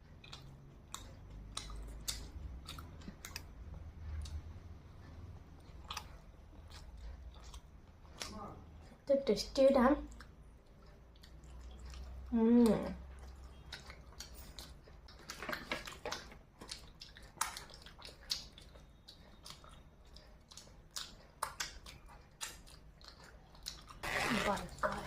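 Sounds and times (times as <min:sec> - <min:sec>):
person chewing food: 0:00.0 - 0:09.0, 0:10.1 - 0:24.3
wet mouth clicks and smacks: 0:00.2 - 0:03.6, 0:13.2 - 0:24.0.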